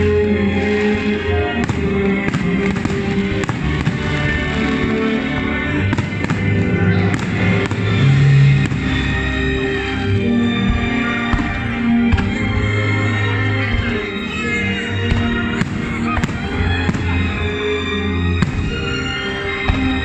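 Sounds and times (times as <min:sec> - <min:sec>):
loud music with held notes: 0:00.0 - 0:20.0
fireworks popping and crackling: 0:00.8 - 0:09.3, 0:13.7 - 0:17.5, 0:18.4 - 0:20.0.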